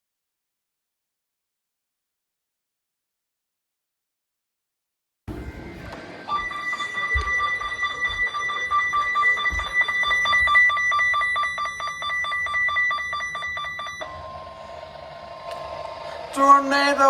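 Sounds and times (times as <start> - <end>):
two-tone attention signal: 6.3 - 14.7.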